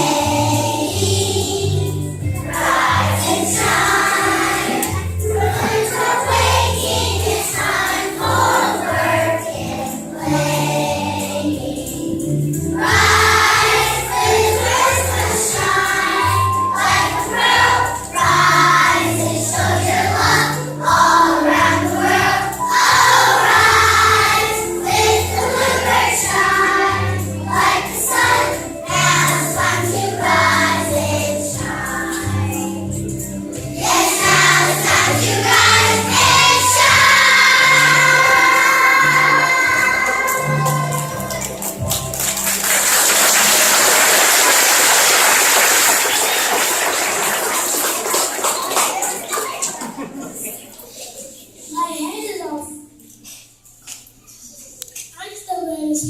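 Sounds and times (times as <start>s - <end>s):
group of voices singing: 0.0s - 12.1s, 12.8s - 41.7s.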